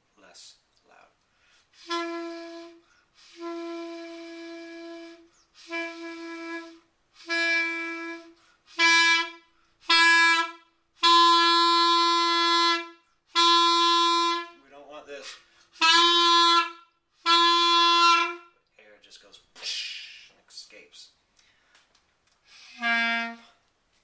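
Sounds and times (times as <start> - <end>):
clarinet honking notes: 1.8 - 14.6, 15.8 - 18.5, 22.7 - 23.6.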